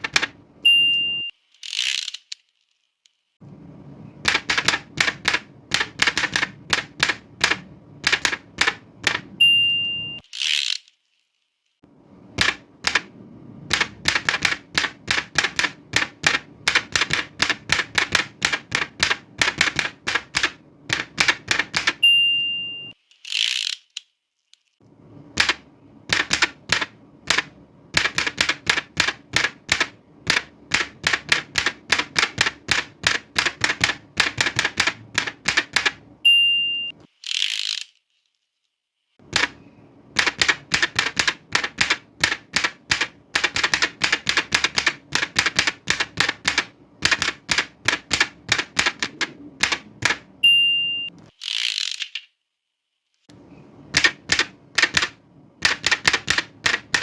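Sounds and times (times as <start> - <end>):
typewriter key clacks: 0.0 - 0.4, 4.2 - 9.3, 12.4 - 13.1, 13.7 - 22.0, 25.4 - 36.0, 39.3 - 39.6, 40.2 - 50.3, 53.9 - 57.0
typewriter margin bell ding: 0.7 - 1.3, 9.4 - 10.2, 22.0 - 22.9, 36.3 - 36.9, 50.4 - 51.1
carriage return sliding: 1.5 - 2.5, 10.2 - 11.0, 23.1 - 24.6, 37.1 - 38.0, 51.2 - 52.3.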